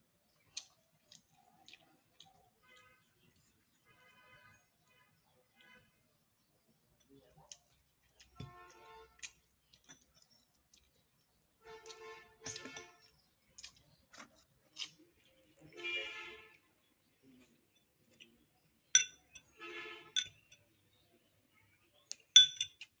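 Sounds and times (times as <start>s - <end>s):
utensil clinking against a dish: 11.8s - 13.3s, 18.9s - 20.8s, 22.1s - 23.0s.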